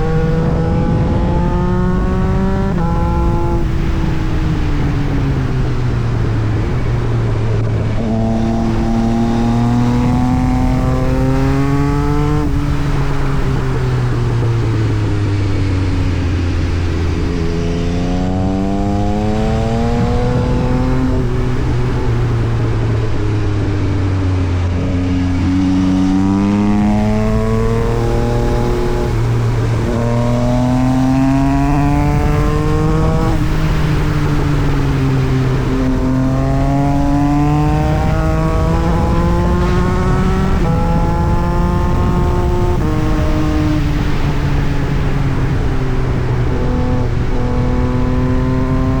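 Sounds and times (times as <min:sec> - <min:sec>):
motorcycle engine revving: 0:00.0 - 0:49.0.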